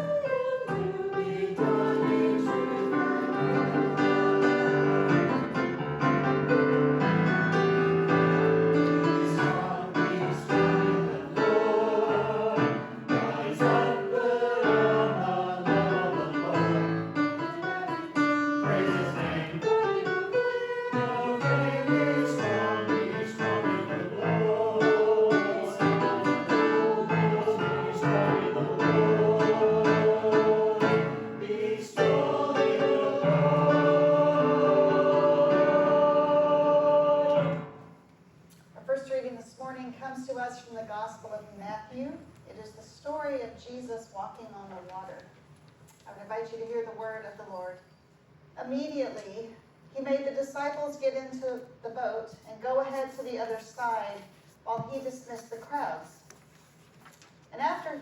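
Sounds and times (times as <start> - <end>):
group singing worship song: 0.0 - 5.6, 8.2 - 38.0
instrumental accompaniment: 0.1 - 38.1.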